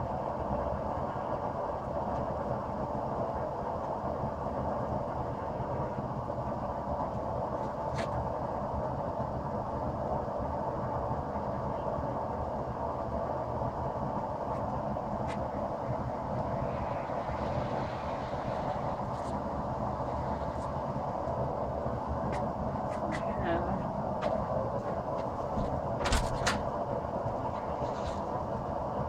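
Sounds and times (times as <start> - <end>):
gas burner rushing: 14.1 - 29.0.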